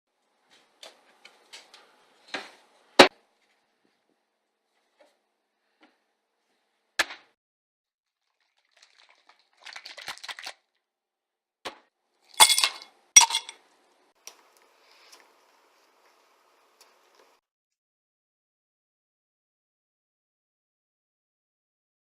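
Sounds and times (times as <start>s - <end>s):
hard pieces clinking in a glass: 12.4s - 13.6s.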